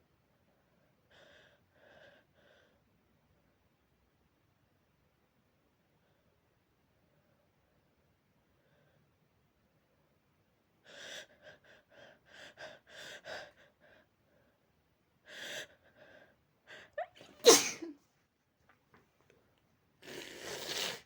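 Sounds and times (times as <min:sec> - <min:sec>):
person sneezing loudly: 0:17.2 - 0:18.0.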